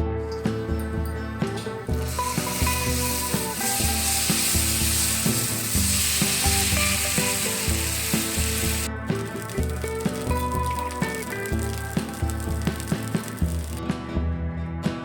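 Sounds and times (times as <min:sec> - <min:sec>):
food sizzling in oil: 0:01.9 - 0:13.8.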